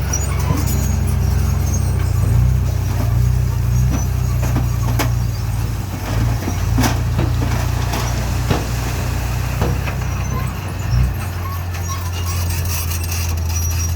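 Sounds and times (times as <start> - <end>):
heavy machinery engine running: 0.0 - 13.9.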